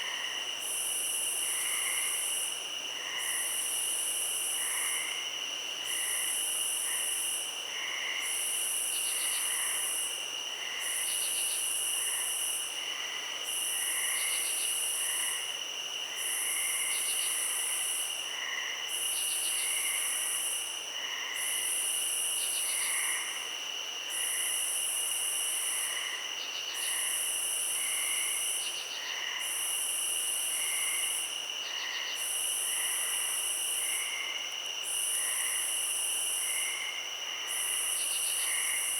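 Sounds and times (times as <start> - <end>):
high-pitched insect trill: 16.1 - 38.9.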